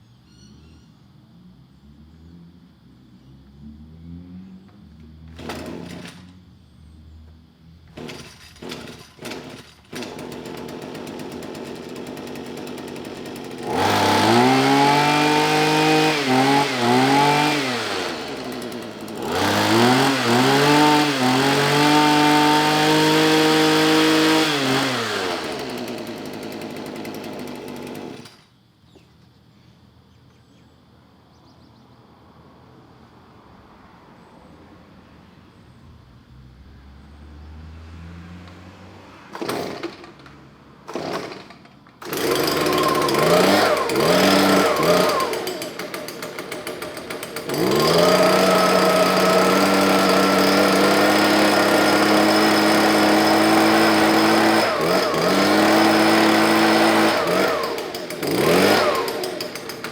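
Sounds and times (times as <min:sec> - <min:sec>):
small petrol engine idling and revving: 0:01.8 - 0:28.4, 0:36.6 - 0:59.9
starter cord pulls: 0:05.3 - 0:06.4, 0:08.0 - 0:23.0, 0:39.3 - 0:59.9.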